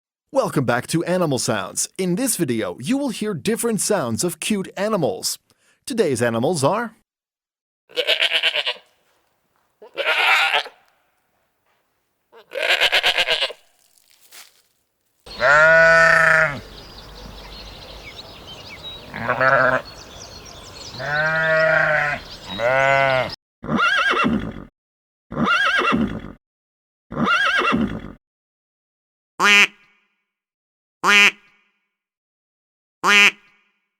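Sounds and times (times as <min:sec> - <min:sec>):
background noise: 0:00.4 - 0:07.0, 0:07.9 - 0:23.4
farm animal calls: 0:07.9 - 0:09.2, 0:09.8 - 0:11.0, 0:12.3 - 0:13.9, 0:15.3 - 0:24.4.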